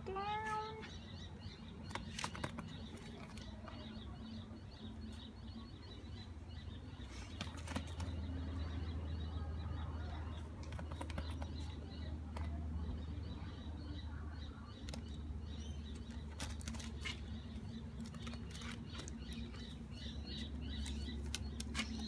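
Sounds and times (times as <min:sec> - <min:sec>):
bird clicking and scratching in box: 0:01.8 - 0:03.5, 0:10.6 - 0:11.7.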